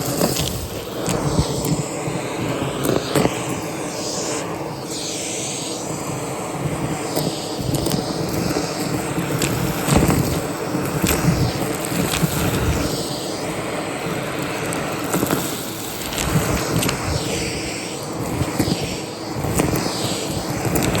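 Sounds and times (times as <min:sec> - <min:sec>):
vacuum cleaner airflow hiss: 0:00.0 - 0:21.0
vacuum motor hum: 0:00.0 - 0:21.0.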